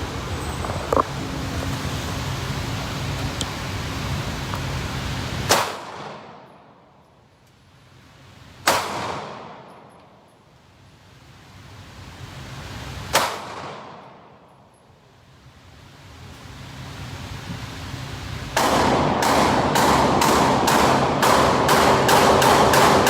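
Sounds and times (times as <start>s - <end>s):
gunshots with echo: 18.6s - 23.0s.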